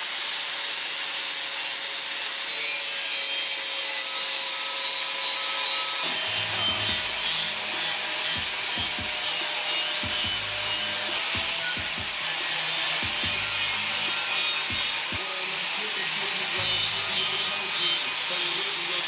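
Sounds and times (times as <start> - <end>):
power tool grinding metal: 0.0 - 19.0
music with pulsing beat: 6.3 - 15.2.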